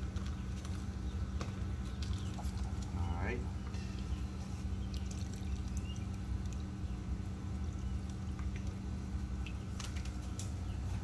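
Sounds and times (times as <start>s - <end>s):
steady low hum: 0.0s - 11.0s
small splashes: 3.9s - 6.7s
water pouring and dripping: 4.9s - 6.7s.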